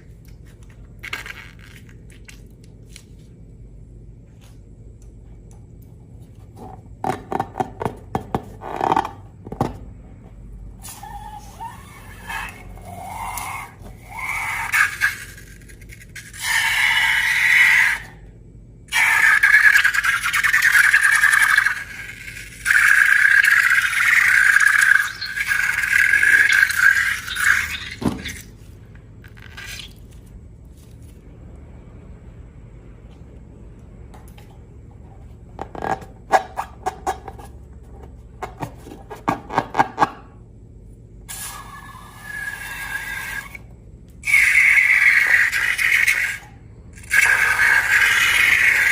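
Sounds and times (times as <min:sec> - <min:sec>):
slime and balloons squeezed squeaking: 0:10.8 - 0:18.2, 0:18.9 - 0:28.6, 0:29.3 - 0:30.2, 0:44.2 - 0:48.9.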